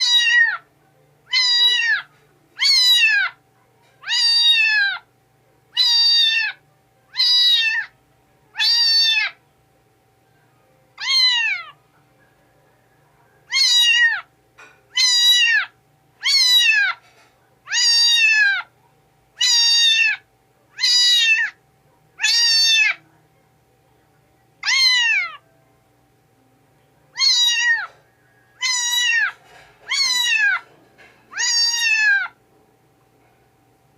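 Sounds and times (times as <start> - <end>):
kitten meowing: 0.0 - 0.6, 1.3 - 3.4, 4.0 - 5.0, 5.8 - 6.6, 7.2 - 7.9, 8.6 - 9.4, 11.0 - 11.8, 13.5 - 14.3, 15.0 - 17.0, 17.7 - 18.7, 19.4 - 20.2, 20.8 - 21.6, 22.2 - 23.0, 24.6 - 25.4, 27.1 - 28.0, 28.6 - 30.6, 31.3 - 32.4.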